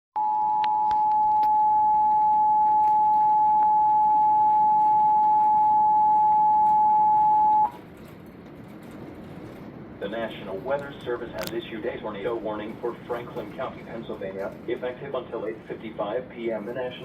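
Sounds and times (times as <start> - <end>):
two-tone alert beep: 0.2 - 7.7.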